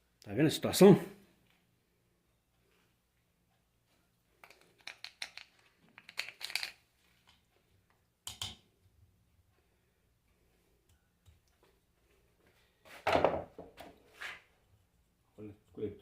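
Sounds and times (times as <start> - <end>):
metal parts clicking and scraping: 4.4 - 7.4
knock on workbench: 13.0 - 13.7.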